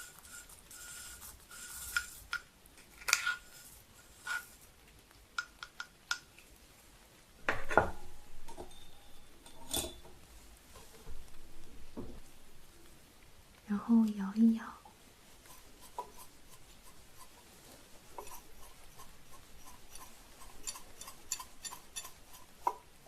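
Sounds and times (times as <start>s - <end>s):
tea leaves scraping: 0.0s - 5.0s, 15.2s - 23.0s.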